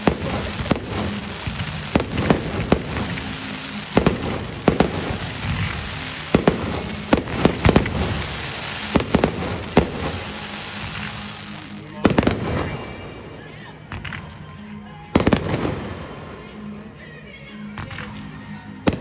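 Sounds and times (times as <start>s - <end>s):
firework shells bursting: 0.0s - 12.3s
fireworks crackling: 0.0s - 17.2s, 17.8s - 19.0s.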